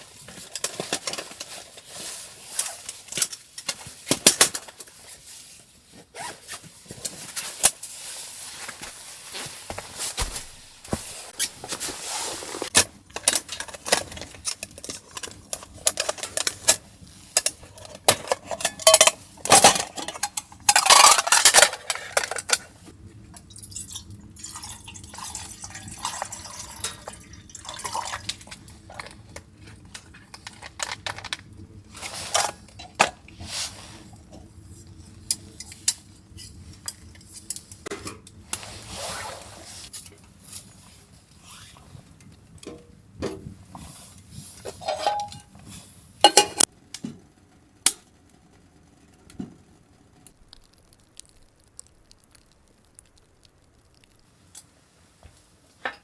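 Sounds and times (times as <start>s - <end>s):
metal cookware clinking and scraping: 13.2s - 22.6s, 44.6s - 46.7s.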